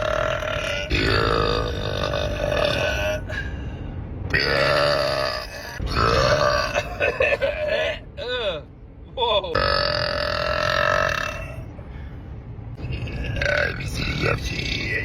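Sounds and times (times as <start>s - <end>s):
man burping: 0.0s - 3.5s, 4.3s - 8.0s, 9.5s - 11.7s, 12.8s - 14.3s.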